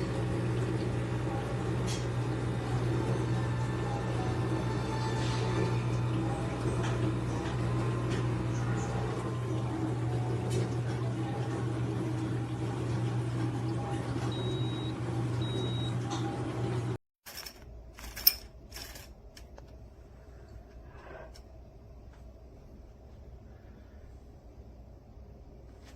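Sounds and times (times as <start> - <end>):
espresso machine pump humming: 0.0 - 17.0.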